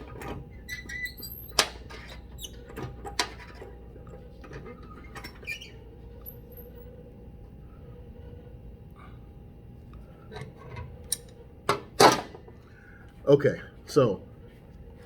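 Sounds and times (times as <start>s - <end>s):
faint steady hum: 0.0s - 15.0s
small squeaks: 0.6s - 2.9s, 4.2s - 6.8s.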